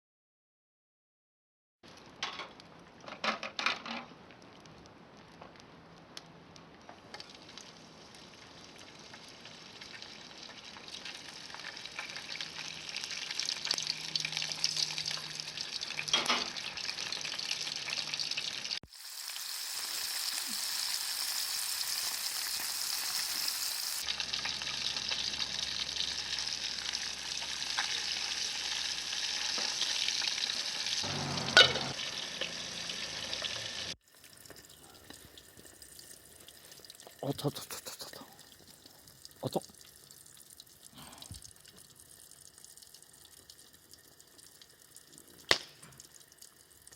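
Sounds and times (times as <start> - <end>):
fish sizzling in hot oil: 7.1 - 46.9
sharp pop of oil: 45.5 - 46.0.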